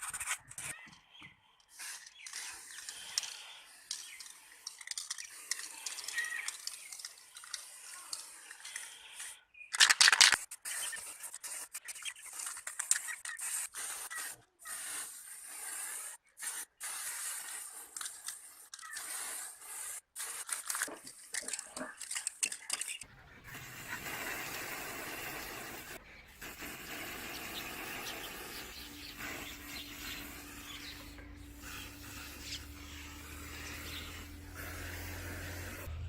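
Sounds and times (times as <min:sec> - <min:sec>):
scraping and rubbing fan parts: 0:23.5 - 0:36.0.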